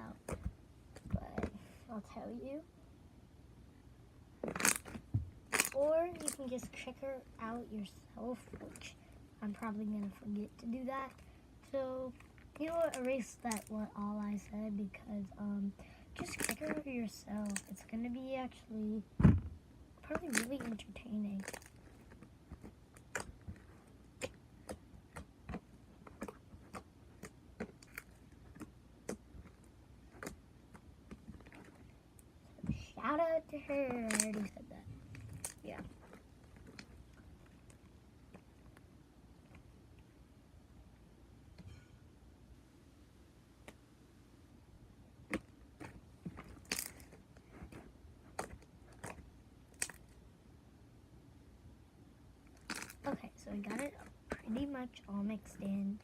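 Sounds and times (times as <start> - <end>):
slime being kneaded: 19.2 - 31.9, 45.2 - 50.2, 52.5 - 55.5.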